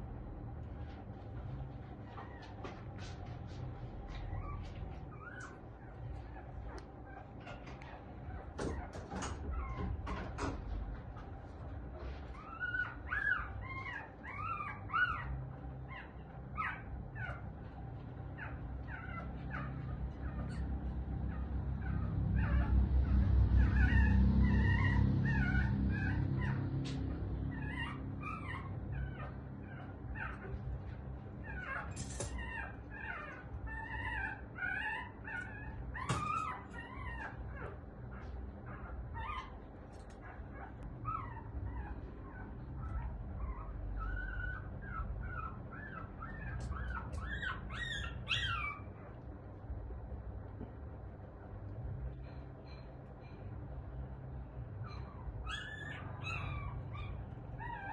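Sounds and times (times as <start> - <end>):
small animal whimpering: 4.2 - 10.0, 12.2 - 17.6, 18.4 - 49.2, 54.8 - 57.9
low rumbling noise: 9.4 - 31.6.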